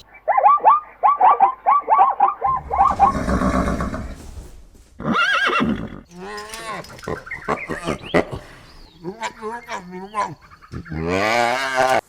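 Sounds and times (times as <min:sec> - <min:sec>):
breathy rushing sound: 0:02.5 - 0:05.0
horse whinnying: 0:02.5 - 0:12.0.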